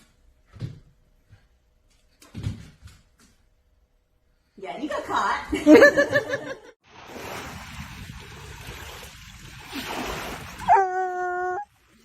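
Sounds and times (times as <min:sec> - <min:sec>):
dog howling: 0:10.6 - 0:11.7.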